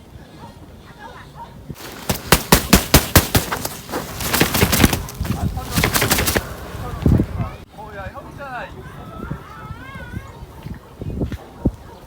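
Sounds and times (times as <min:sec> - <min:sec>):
sharp cracks and knocks: 0:01.8 - 0:06.6.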